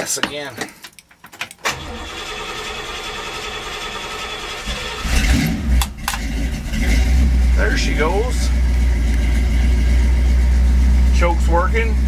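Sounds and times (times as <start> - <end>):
car engine cranking on starter: 1.6 - 9.9
engine rumbling: 1.7 - 12.0.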